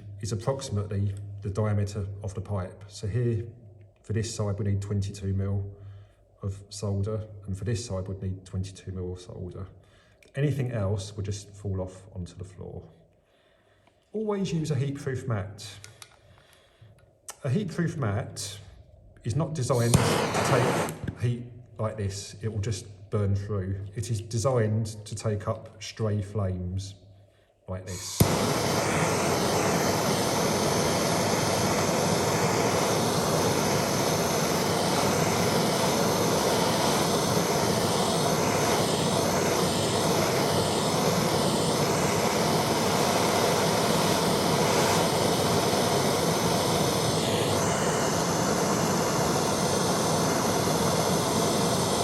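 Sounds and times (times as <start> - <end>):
blowtorch flame hissing: 19.7 - 21.2, 27.9 - 52.0.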